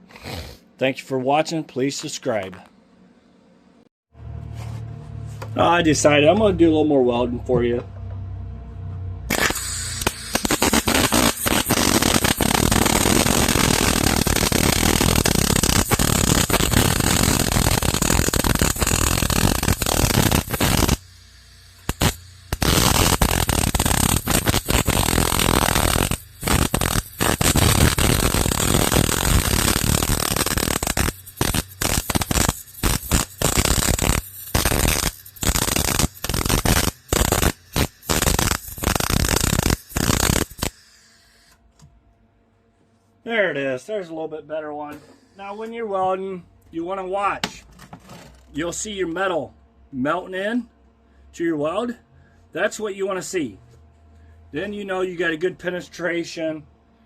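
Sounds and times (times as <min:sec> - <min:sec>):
arc welding crackle: 0:09.3 - 0:41.5.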